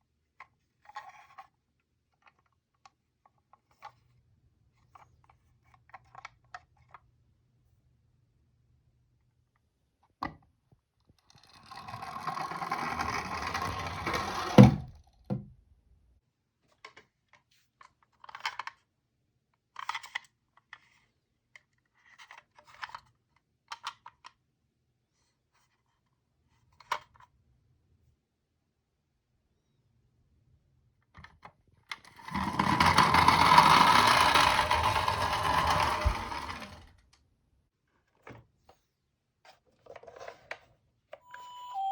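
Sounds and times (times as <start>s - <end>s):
toy car rattling down slope: 11.2s - 15.0s, 32.0s - 37.0s
light clicks of toys handled: 16.7s - 18.9s.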